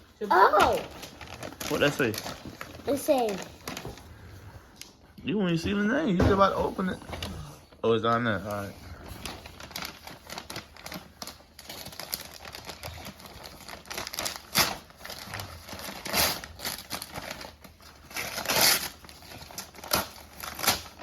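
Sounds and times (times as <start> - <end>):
wrapping paper tearing and crumpling: 0.3 - 4.4, 8.2 - 21.0.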